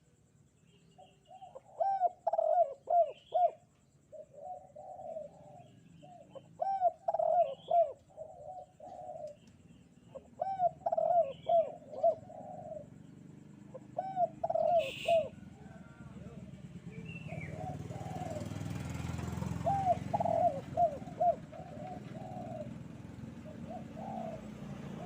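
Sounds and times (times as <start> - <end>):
faint small bird chirps: 0.0 - 17.6
dove cooing: 1.0 - 25.0.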